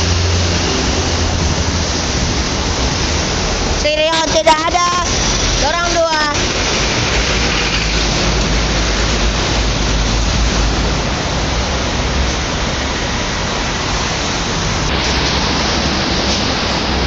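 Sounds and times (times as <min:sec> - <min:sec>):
wind rumble on microphone: 0:00.0 - 0:04.4
roar of fast road traffic: 0:00.0 - 0:17.0.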